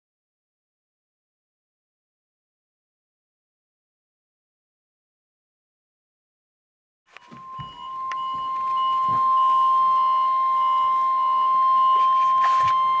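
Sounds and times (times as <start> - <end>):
steady alarm tone from radio: 7.1 - 13.0.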